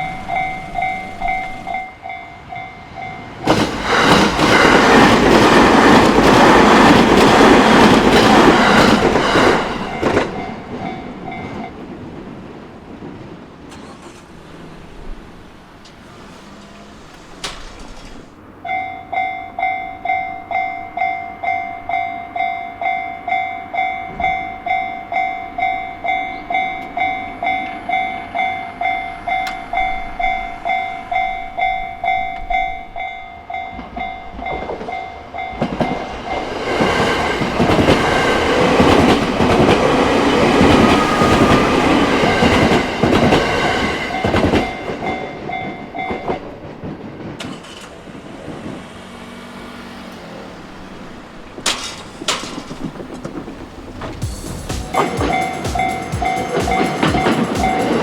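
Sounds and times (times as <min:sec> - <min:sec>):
level crossing warning bell: 0:00.0 - 0:11.9, 0:17.8 - 0:36.5, 0:37.8 - 0:46.6, 0:54.2 - 0:58.0
train wheels clattering on rails: 0:00.0 - 0:58.0.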